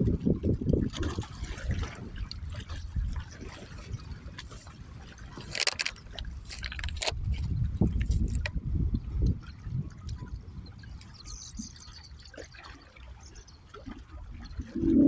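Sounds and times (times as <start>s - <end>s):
lake water lapping and splashing: 0.0s - 15.0s
low rumble: 14.6s - 15.0s.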